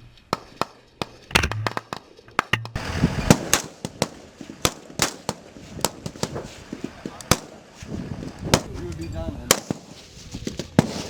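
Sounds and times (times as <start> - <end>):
rifle shots: 0.3 - 8.9, 9.5 - 10.0.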